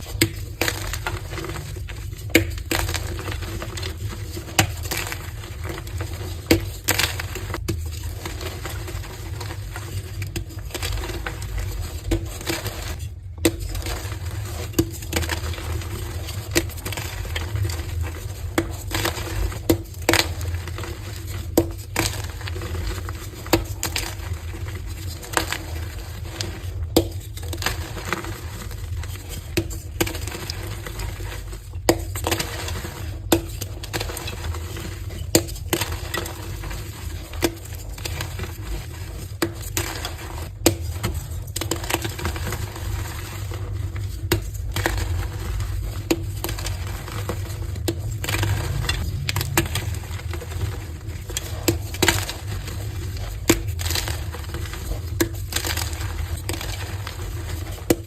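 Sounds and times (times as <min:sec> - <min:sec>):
chalk crunching and snapping: 0:00.0 - 0:58.0
low hum: 0:47.9 - 0:51.4.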